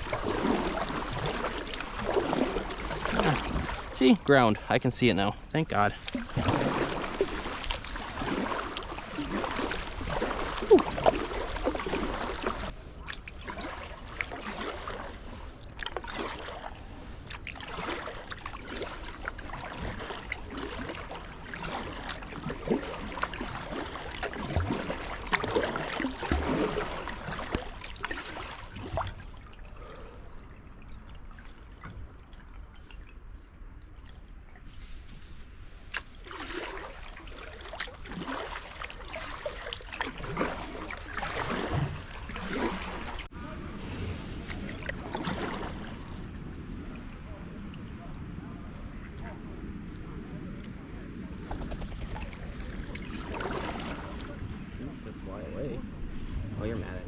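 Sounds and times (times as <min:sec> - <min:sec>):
water trickling: 0:00.0 - 0:34.6
paddle splashes: 0:00.0 - 0:49.8, 0:51.2 - 0:54.9.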